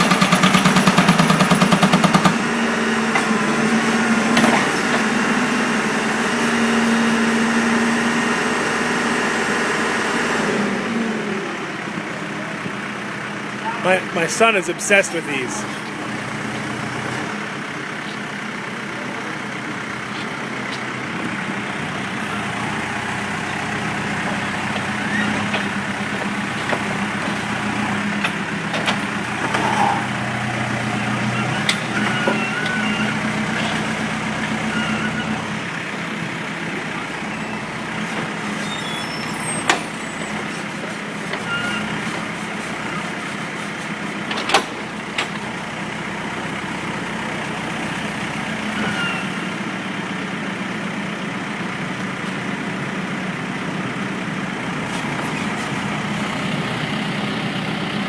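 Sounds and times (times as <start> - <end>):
diesel engine running: 0.0 - 58.0
street traffic: 0.0 - 58.0.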